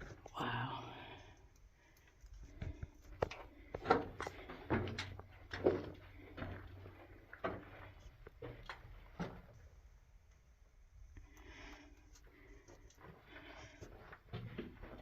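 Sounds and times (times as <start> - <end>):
footsteps on tunnel floor: 2.5 - 9.6, 12.7 - 15.0.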